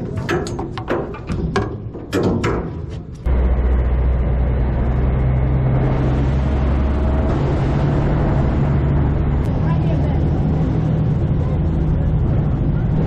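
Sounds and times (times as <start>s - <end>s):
boat engine droning: 3.3s - 13.0s
water rushing noise: 4.0s - 13.0s.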